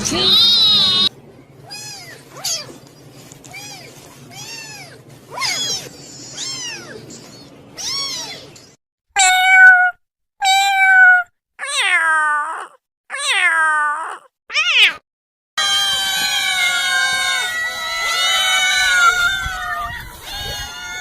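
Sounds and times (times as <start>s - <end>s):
cat meowing: 0.0s - 1.1s, 3.5s - 7.0s, 7.8s - 8.5s, 9.2s - 15.0s, 15.6s - 21.0s
low background hum: 0.0s - 8.8s, 15.6s - 21.0s
second cat meowing loudly: 9.2s - 15.0s, 15.6s - 21.0s.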